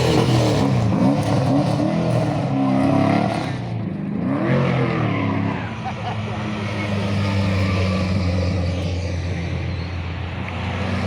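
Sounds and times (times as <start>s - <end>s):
car engine revving hard: 0.0s - 5.1s.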